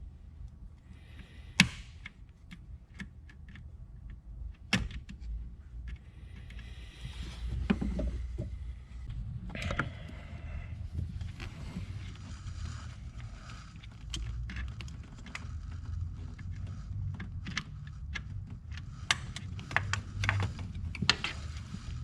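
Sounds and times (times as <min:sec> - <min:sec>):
handling rustling and scraping: 0:05.1 - 0:22.0.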